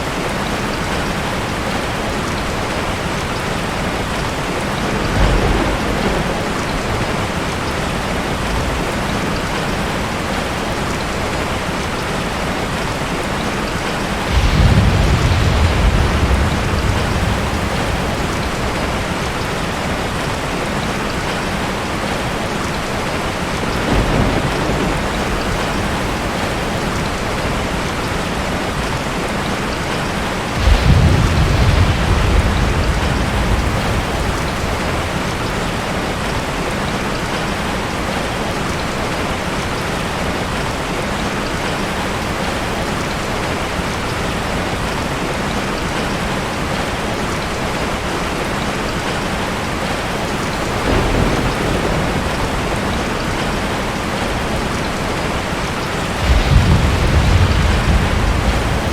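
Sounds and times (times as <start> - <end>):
heavy rain: 0.0 - 58.9
thunder rumbling: 0.1 - 37.3, 49.8 - 58.9.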